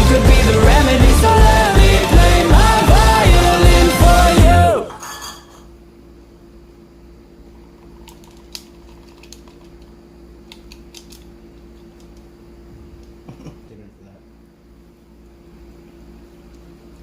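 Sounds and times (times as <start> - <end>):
song with singing: 0.0 - 5.0
steady low hum: 0.0 - 17.0.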